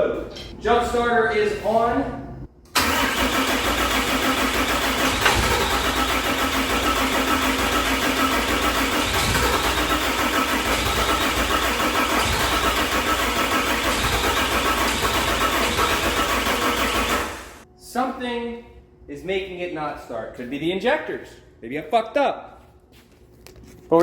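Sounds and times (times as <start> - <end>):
diesel engine cranking: 2.7 - 17.6.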